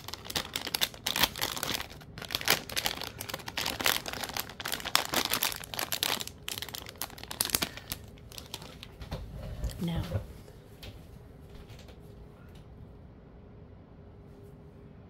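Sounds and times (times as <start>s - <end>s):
packets crinkling: 0.0s - 9.1s.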